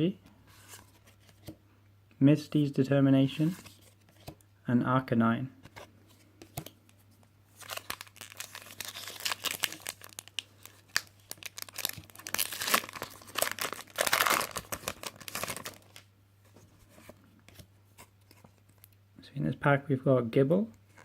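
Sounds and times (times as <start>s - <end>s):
foil wrapper tearing and crinkling: 7.6s - 16.0s.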